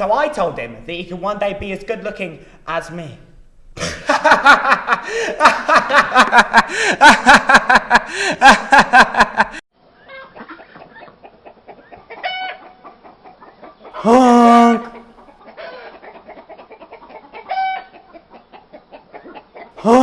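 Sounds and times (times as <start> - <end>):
rapid clucking calls: 10.0 - 14.0, 15.0 - 19.8.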